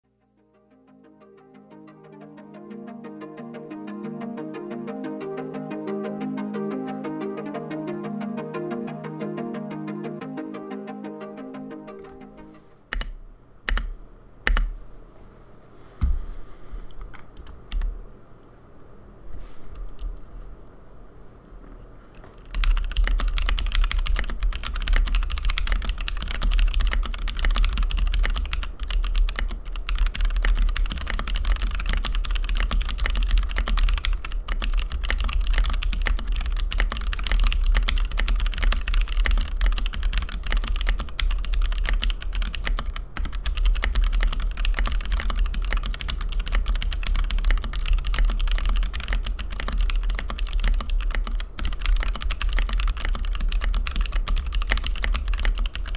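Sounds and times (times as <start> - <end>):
rapid typing on mechanical keyboard: 12.9 - 14.7, 22.3 - 55.9.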